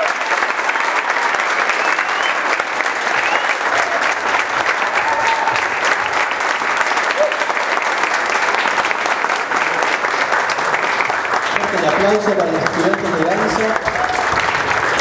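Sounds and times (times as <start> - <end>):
audience applauding: 0.0 - 15.0
whistle: 1.7 - 2.5, 3.2 - 3.6
people shouting: 4.8 - 5.6.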